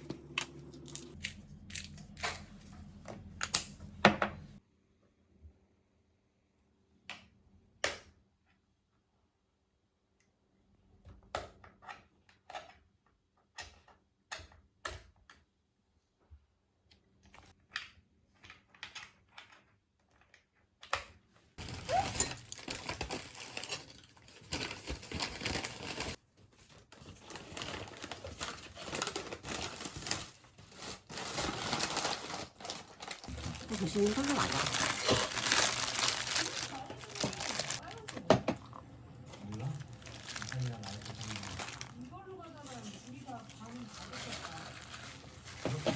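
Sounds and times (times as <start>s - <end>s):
packaging crinkling and rustling: 21.6s - 45.9s.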